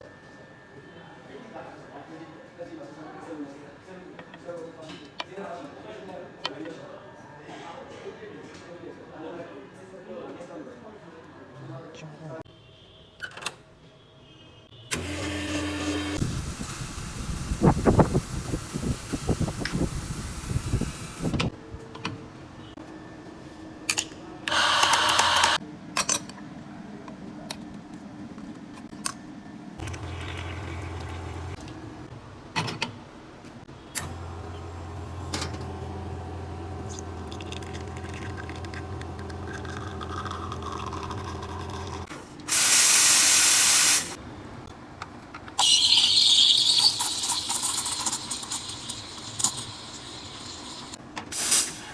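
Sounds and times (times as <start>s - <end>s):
espresso pump hum: 15.0s - 21.4s, 24.5s - 25.6s, 29.8s - 31.6s, 34.0s - 44.2s, 45.6s - 51.0s
steam hissing: 15.0s - 21.4s, 42.5s - 44.2s, 46.6s - 51.9s
short hiss: 51.4s - 51.9s.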